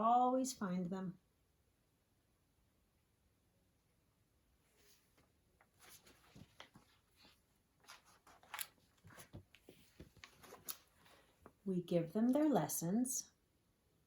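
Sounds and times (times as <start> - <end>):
picture book pages rustling: 4.6 - 11.6.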